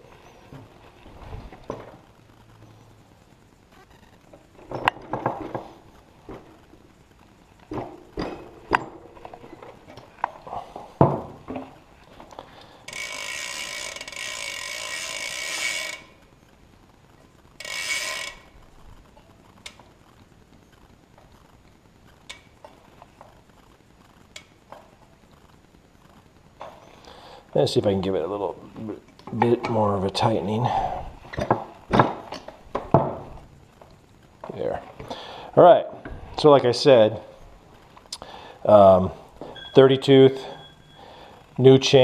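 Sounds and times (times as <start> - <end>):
rapid ratcheting buzz: 12.8 - 16.2, 17.6 - 18.6.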